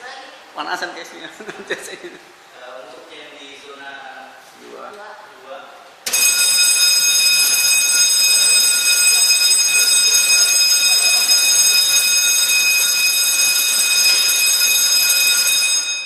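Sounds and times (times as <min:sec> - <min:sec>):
fire alarm continuous tone: 0:06.1 - 0:16.0.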